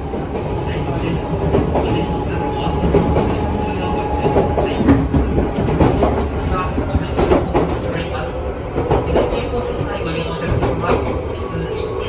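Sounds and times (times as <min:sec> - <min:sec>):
train wheels rumbling on rails: 0:00.0 - 0:12.0.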